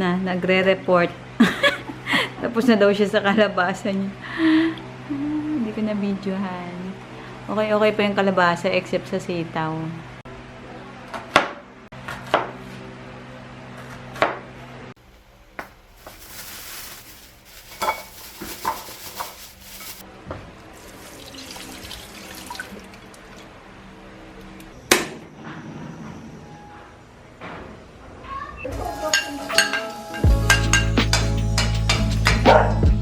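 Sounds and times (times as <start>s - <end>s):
dishes and utensils clinking: 17.6s - 20.0s, 28.8s - 32.4s.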